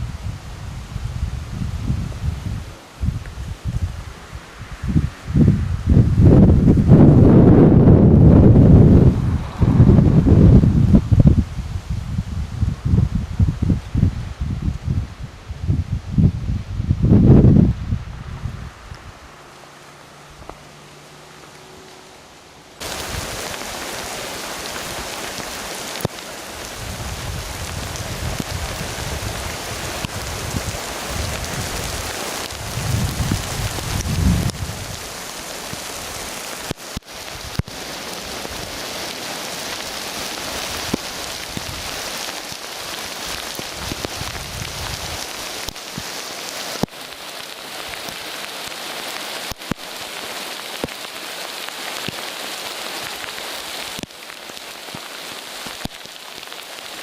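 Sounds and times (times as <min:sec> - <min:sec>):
low rumbling: 0:00.0 - 0:23.5
rain pattering: 0:00.0 - 0:57.0.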